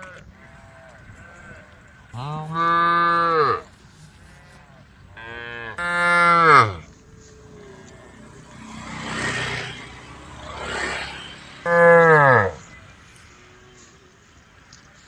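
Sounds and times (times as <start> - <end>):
cows mooing: 2.2 - 4.6, 5.2 - 12.8.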